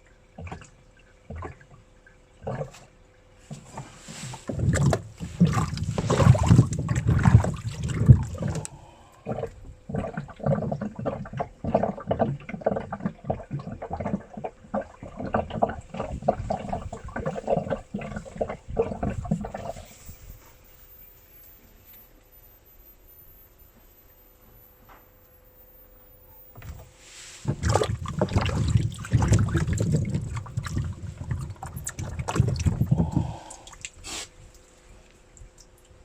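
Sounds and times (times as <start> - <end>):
washing machine sloshing and knocking: 0.0 - 8.7, 9.3 - 20.3, 26.5 - 33.8.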